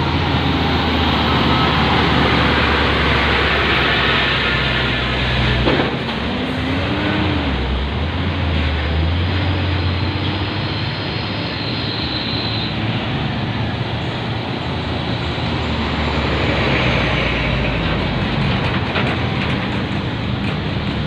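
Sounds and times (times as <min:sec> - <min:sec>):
diesel truck engine running: 0:00.0 - 0:11.5
loud rushing noise: 0:00.0 - 0:21.0.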